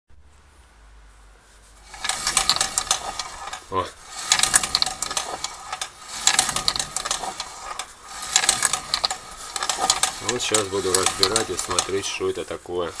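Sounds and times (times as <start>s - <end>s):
metal parts rattling inside drum brake: 1.8s - 13.0s.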